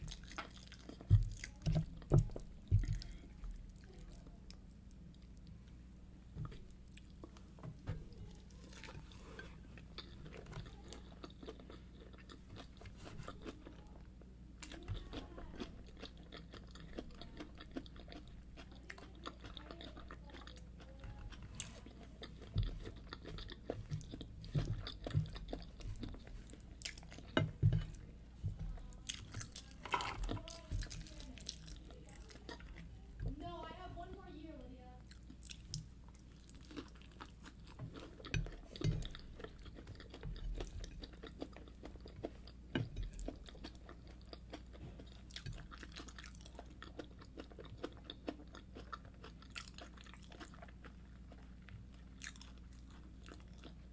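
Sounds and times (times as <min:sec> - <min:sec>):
crunchy chewing: 0:08.2 - 0:33.2, 0:35.1 - 0:53.9.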